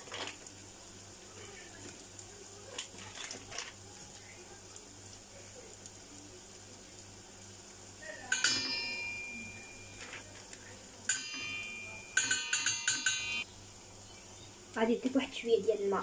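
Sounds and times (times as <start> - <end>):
metal spoon clinking on pot: 8.3 - 10.2, 11.1 - 13.4
spoon tapping pot rim: 8.3 - 10.2, 11.1 - 13.4.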